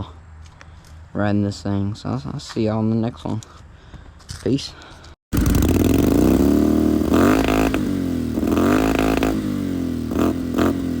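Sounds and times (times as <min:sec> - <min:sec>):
engine revving loudly: 0:05.4 - 0:11.0.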